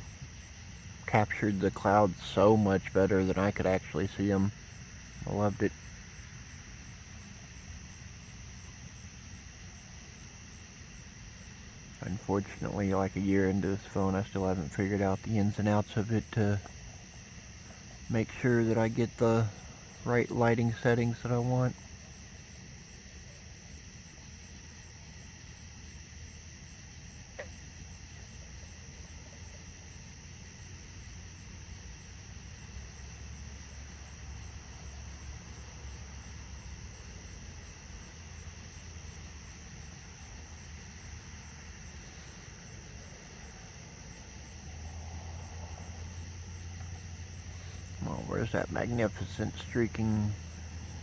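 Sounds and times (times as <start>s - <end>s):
crickets trilling: 0.0s - 51.0s
distant road traffic: 0.0s - 51.0s.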